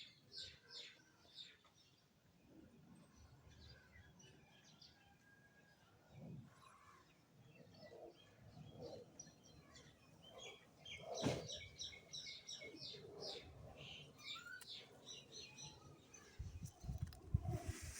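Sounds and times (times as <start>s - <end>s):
small birds chirping: 7.5s - 17.9s.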